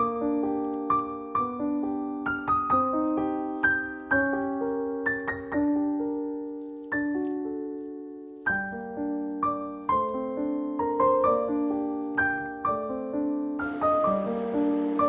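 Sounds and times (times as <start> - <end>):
calm piano melody: 0.0 - 15.0
faint hiss: 9.4 - 15.0.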